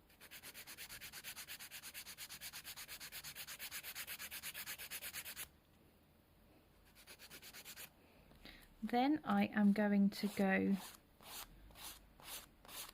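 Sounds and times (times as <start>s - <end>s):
nail file filing: 0.1s - 5.5s, 6.9s - 7.9s, 10.2s - 12.9s.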